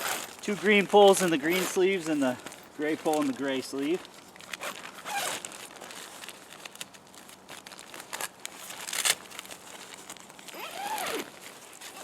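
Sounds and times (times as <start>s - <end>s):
tent fabric rustling and crinkling: 0.0s - 12.0s.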